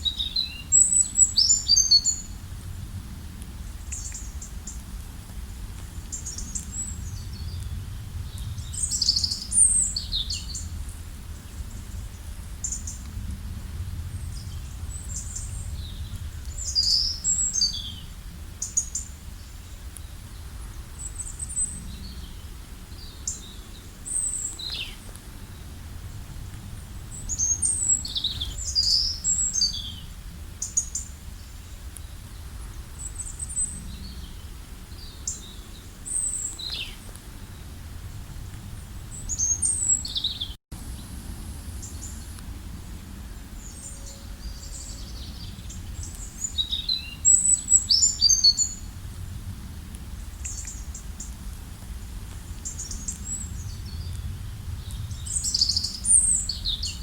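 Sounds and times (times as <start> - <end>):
birds chirping and trilling: 0.0 - 2.4, 8.3 - 10.7, 14.2 - 19.5, 27.1 - 31.5, 39.1 - 41.1, 43.6 - 48.9
low outdoor rumble: 0.0 - 57.0.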